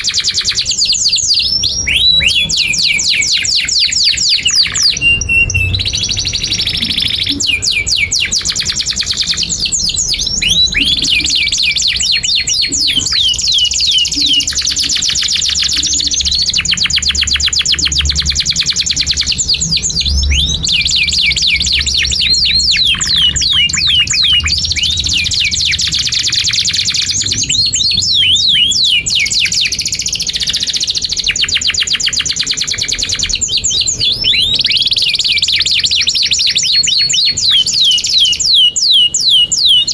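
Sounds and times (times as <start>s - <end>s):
canary singing trills: 0.0s - 39.9s
steady low hum: 0.8s - 29.3s.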